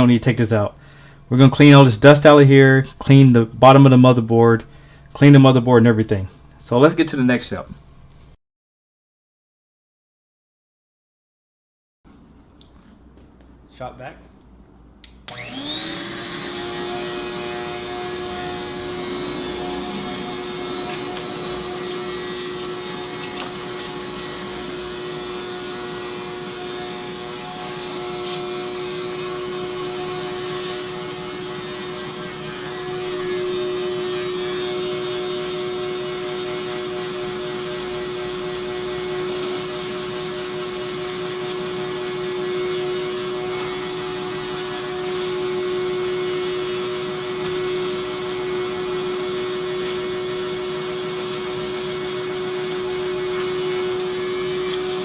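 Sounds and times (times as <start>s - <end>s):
shop vacuum motor whining: 15.3s - 55.0s.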